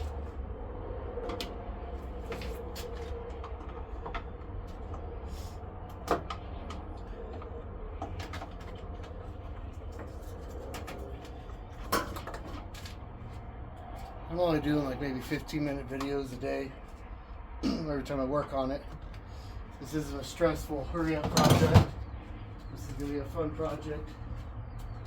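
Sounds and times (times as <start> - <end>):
steady low hum: 0.0 - 25.0
car body parts clicking and rattling: 1.1 - 14.2, 20.1 - 22.8.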